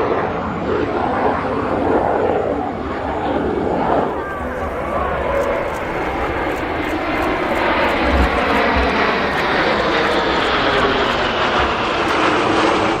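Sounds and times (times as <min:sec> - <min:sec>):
jet engines running: 0:03.4 - 0:13.0
high whine: 0:04.1 - 0:13.0.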